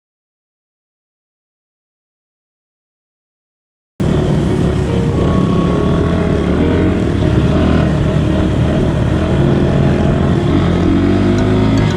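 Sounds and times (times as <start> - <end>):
loud noise: 4.0 - 11.9.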